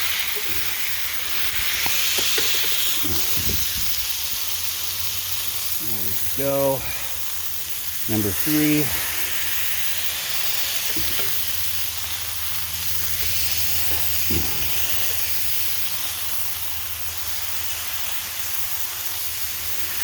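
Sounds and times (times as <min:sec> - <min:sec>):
burger patties sizzling on griddle: 0:00.0 - 0:20.0
steady low hum: 0:05.7 - 0:17.0.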